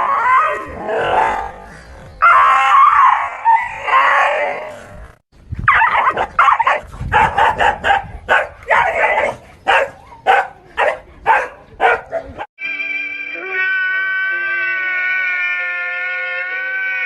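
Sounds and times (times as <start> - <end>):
dog barking rapidly: 5.7 - 12.5.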